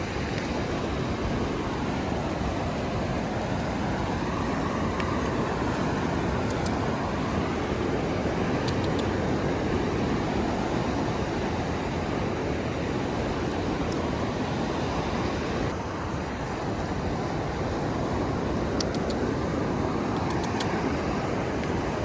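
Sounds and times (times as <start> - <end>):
ocean surf breaking: 0.0 - 22.0
faint high ticks: 8.6 - 9.4, 17.8 - 19.2.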